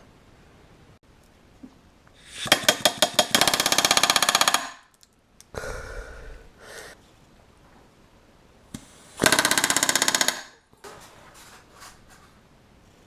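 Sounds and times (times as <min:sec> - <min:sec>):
pneumatic rivet gun rattling: 0:02.4 - 0:04.7, 0:09.2 - 0:10.4.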